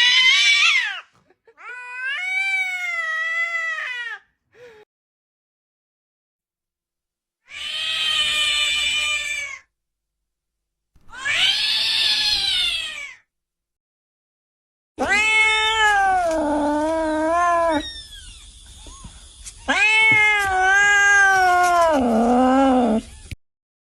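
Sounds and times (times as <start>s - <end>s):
cat meowing: 7.5s - 9.6s, 11.1s - 13.2s, 15.0s - 23.4s.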